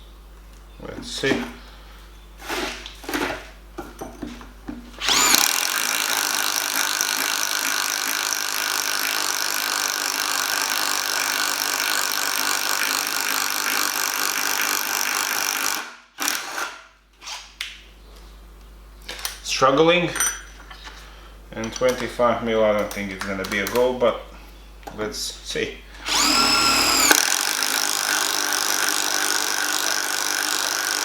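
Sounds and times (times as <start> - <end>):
impact driver boring into wood: 2.4 - 3.3, 5.0 - 16.8, 26.0 - 31.0.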